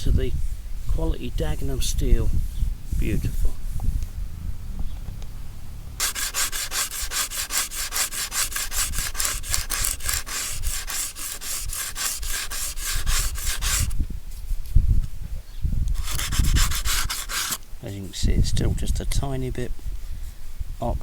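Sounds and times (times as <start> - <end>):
sandpaper rubbing on metal: 6.0 - 14.0, 16.0 - 17.6.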